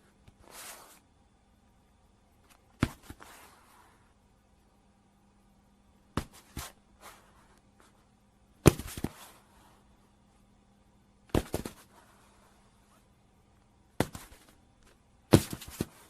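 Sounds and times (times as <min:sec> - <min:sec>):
body falling with heavy thud: 0:08.6 - 0:09.2, 0:15.3 - 0:16.0.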